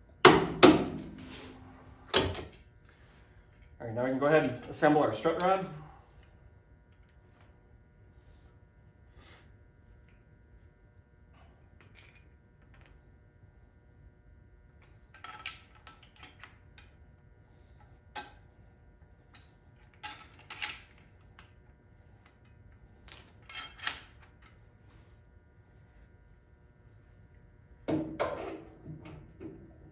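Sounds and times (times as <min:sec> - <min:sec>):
metal hardware clinking and clattering: 0:15.1 - 0:16.6, 0:19.4 - 0:21.0.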